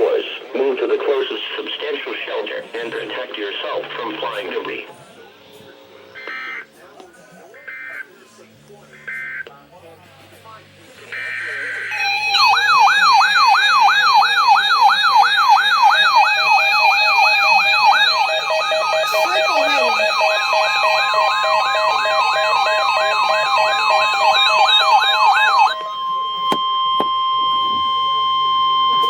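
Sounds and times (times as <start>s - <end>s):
steady high tone: 11.1s - 29.0s
electronic alert siren yelping: 11.2s - 28.8s.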